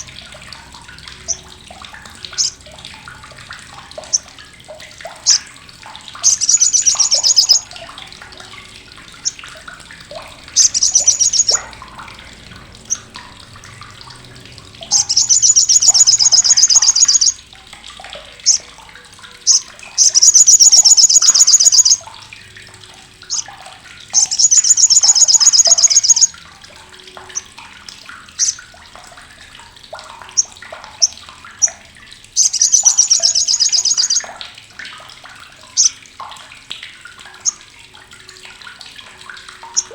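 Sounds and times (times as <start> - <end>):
sharp bird chips: 6.2 - 7.6, 19.5 - 22.0, 24.2 - 26.3, 32.4 - 34.2.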